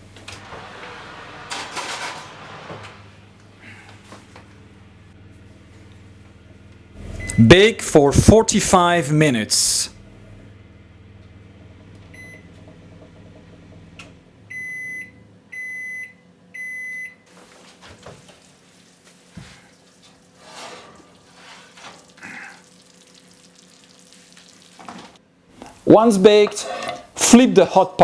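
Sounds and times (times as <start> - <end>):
oven humming: 0.0 - 28.0
oven timer beeps: 7.0 - 8.3, 12.1 - 12.6, 14.5 - 17.2.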